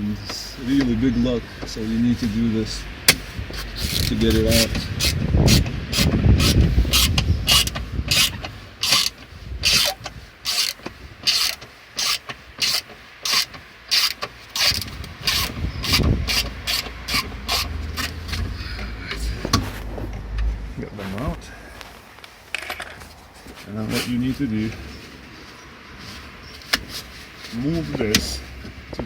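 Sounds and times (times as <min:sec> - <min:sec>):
ratchet wrench clicking: 0:03.7 - 0:18.4.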